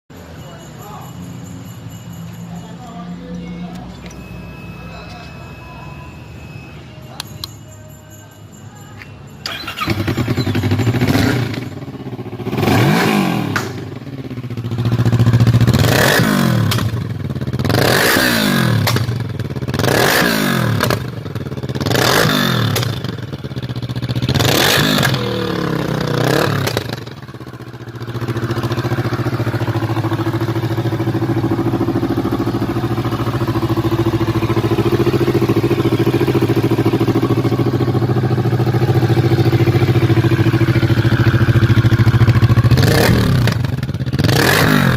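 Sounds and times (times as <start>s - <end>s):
motorcycle engine revving and idling: 9.4s - 44.9s.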